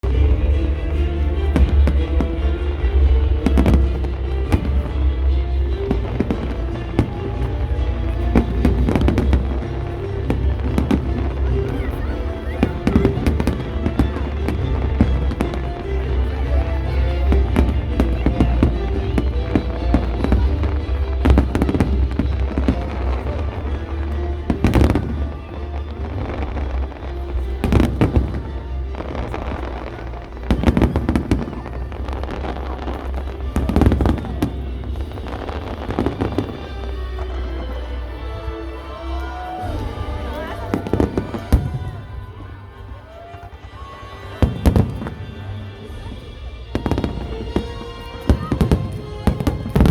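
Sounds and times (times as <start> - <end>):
fireworks bangs and crackles: 0.0 - 49.9.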